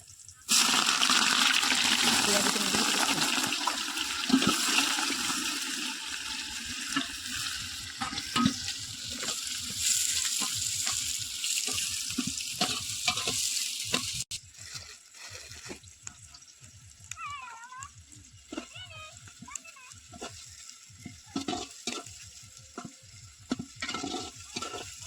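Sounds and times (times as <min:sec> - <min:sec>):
curry sizzling in a pan: 0:00.0 - 0:25.0
spatula scraping a pan: 0:06.6 - 0:14.3, 0:18.4 - 0:25.0.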